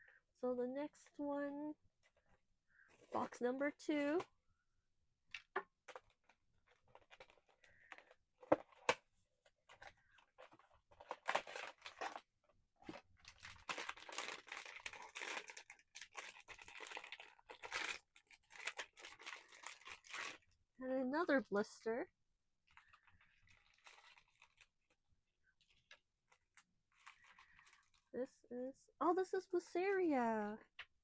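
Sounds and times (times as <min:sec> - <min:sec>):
packaging tearing and crinkling: 0:09.7 - 0:12.2, 0:12.8 - 0:20.4, 0:22.8 - 0:24.8.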